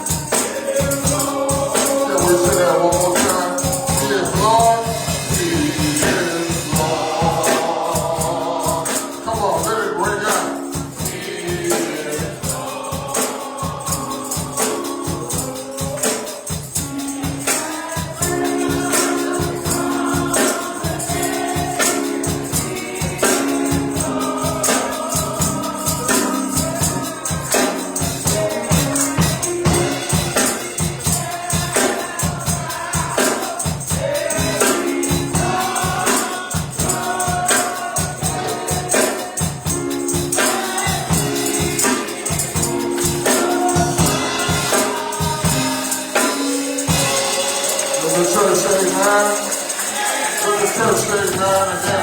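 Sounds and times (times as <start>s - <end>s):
choir singing: 0.0s - 52.0s
tambourine beat: 0.0s - 52.0s.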